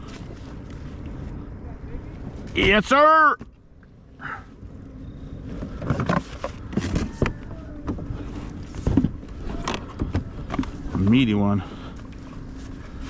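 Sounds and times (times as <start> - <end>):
low steady rumble: 0.0 - 13.0
hands handling fish and gear: 5.4 - 13.0.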